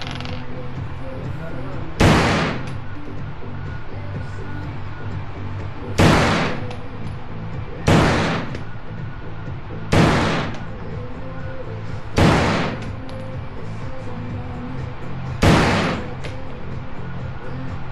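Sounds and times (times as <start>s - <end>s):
rifle shots with echo: 2.0s - 2.8s, 6.0s - 6.9s, 7.8s - 8.7s, 9.9s - 10.8s, 12.2s - 13.1s, 15.4s - 16.4s.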